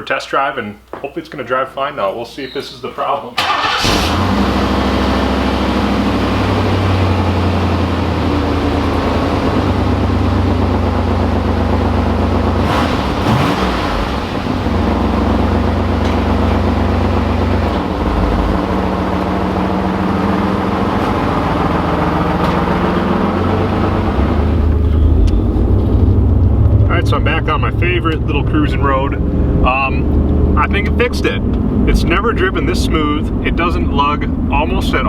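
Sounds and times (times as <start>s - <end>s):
car engine running: 3.4s - 35.0s.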